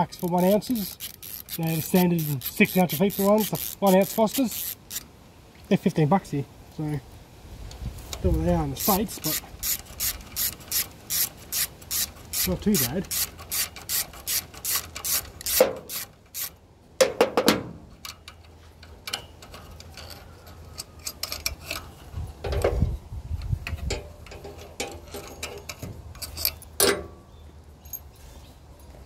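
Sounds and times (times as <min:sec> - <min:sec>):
ratchet wrench clicking: 0:00.0 - 0:05.1, 0:08.8 - 0:16.6.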